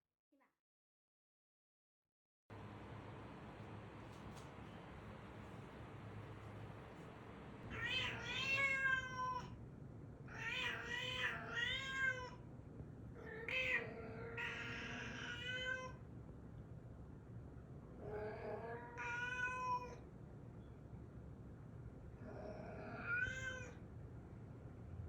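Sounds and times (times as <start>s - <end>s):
cat meowing: 7.7s - 9.6s, 10.3s - 12.4s, 13.2s - 16.0s, 18.1s - 20.0s, 22.7s - 23.8s.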